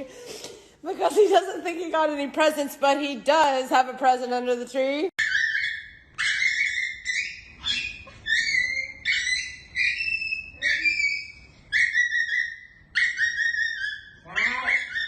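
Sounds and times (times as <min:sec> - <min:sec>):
animal high squeaky calls: 0:05.2 - 0:15.0.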